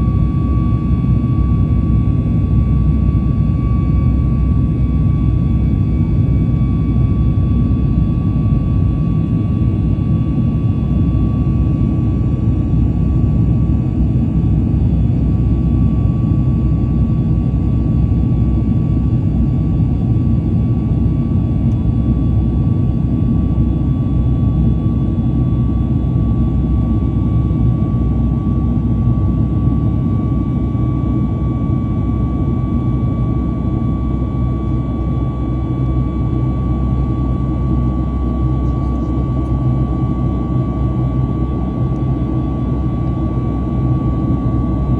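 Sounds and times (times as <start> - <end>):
jet engine cabin noise: 0.0 - 44.9
thin steady whine: 23.2 - 44.9.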